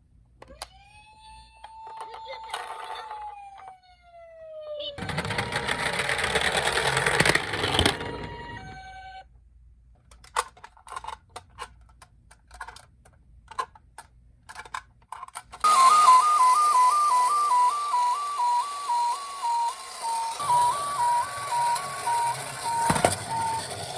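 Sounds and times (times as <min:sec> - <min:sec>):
toy two-tone siren: 0:00.6 - 0:03.9, 0:07.6 - 0:09.3, 0:15.6 - 0:23.9.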